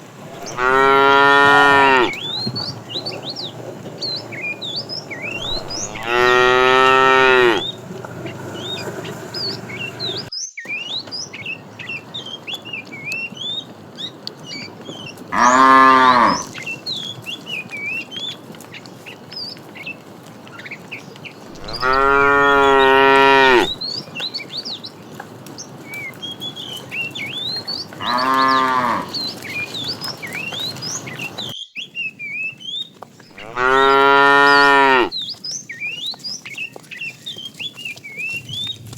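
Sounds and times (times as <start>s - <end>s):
cows mooing: 0.2s - 3.1s, 4.4s - 10.3s, 15.3s - 16.6s, 21.5s - 23.8s, 27.8s - 29.6s, 33.4s - 35.1s.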